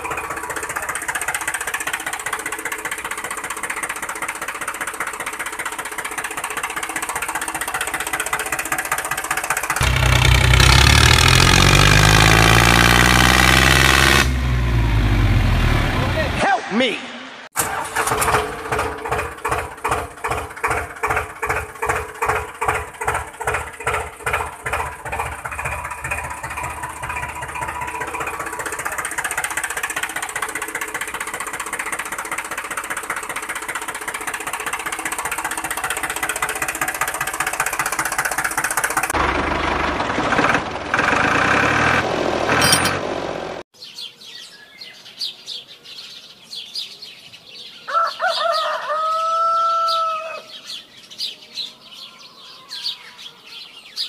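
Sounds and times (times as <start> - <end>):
motor chugging: 0.0 - 14.3, 18.0 - 43.0.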